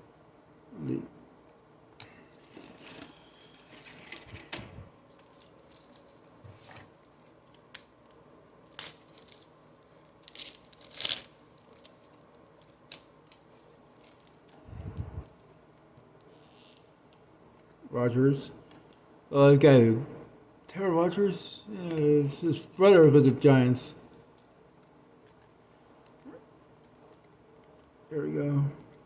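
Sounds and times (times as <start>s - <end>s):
wrapper tearing and crinkling: 2.4s - 14.5s.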